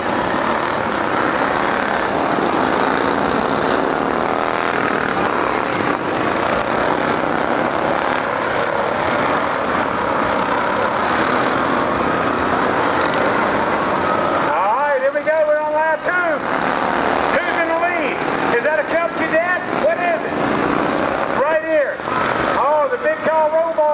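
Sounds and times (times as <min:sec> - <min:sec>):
lawnmower engines revving: 0:00.0 - 0:23.9.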